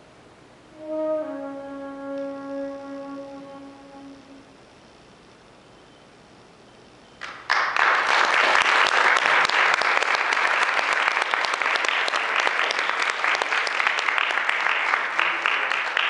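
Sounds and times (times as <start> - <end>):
audience applauding: 7.2 - 16.0.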